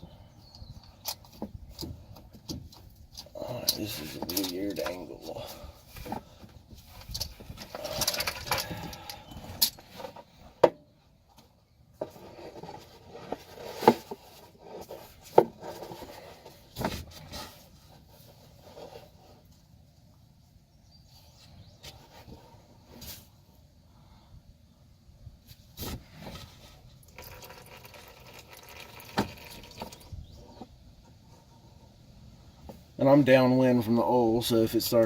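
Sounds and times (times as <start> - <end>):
faint rustling: 0.1 - 24.2
metal tools clinking and knocking: 3.1 - 5.2, 7.0 - 9.8.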